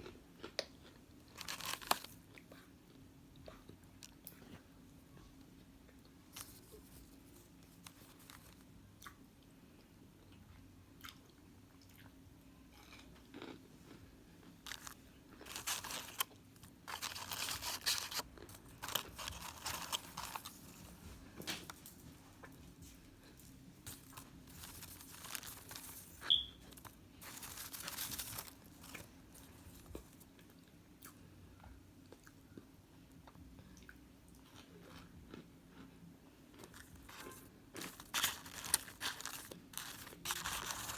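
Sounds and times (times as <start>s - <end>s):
person chewing crunchy food: 0.0s - 2.7s, 12.7s - 31.2s, 33.8s - 35.9s, 36.5s - 40.9s.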